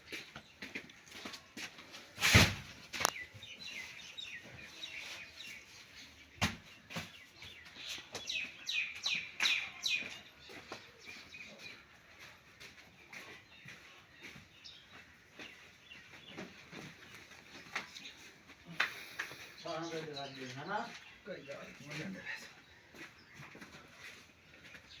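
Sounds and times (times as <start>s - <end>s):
small birds chirping: 0.0s - 25.0s.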